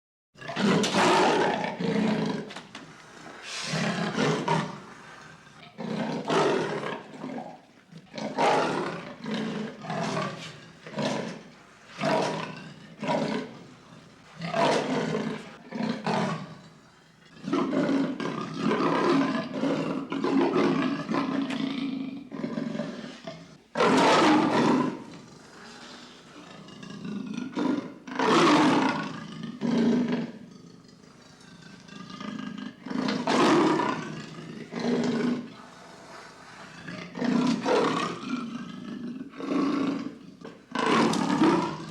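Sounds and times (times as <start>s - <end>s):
lion roaring: 0.4s - 13.7s, 14.4s - 16.7s, 17.3s - 41.9s.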